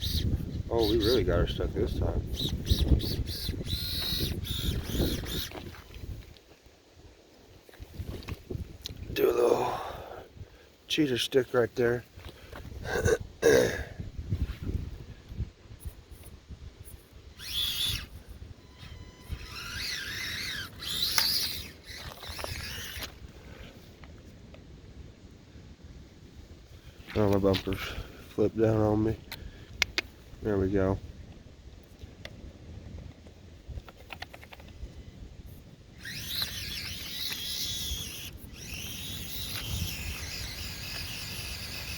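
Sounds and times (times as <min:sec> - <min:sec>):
small electric motor and gears whining: 0:00.0 - 0:06.6, 0:14.3 - 0:24.2, 0:33.0 - 0:41.9.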